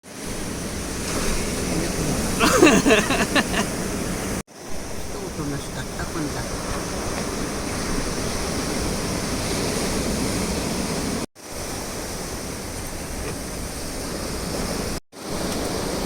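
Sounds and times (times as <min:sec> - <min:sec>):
surf breaking against rocks: 0:00.3 - 0:04.4.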